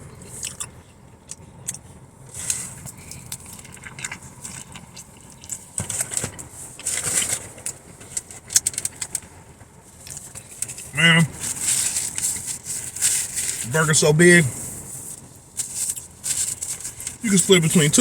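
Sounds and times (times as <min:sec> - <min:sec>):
person chewing food: 0:00.1 - 0:07.6
food wrapper crinkling: 0:10.0 - 0:13.7, 0:15.6 - 0:17.8.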